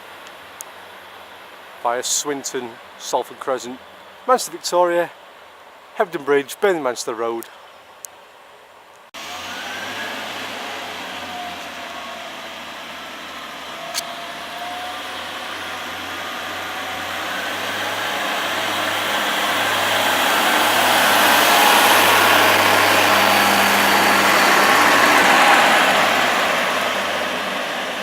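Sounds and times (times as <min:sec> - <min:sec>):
diesel train engine and wheels: 0:09.2 - 0:28.0.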